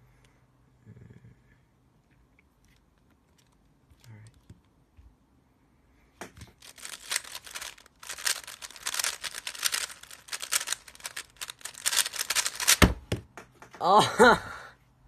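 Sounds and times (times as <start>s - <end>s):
plastic puzzle cube clacking: 6.3s - 13.2s.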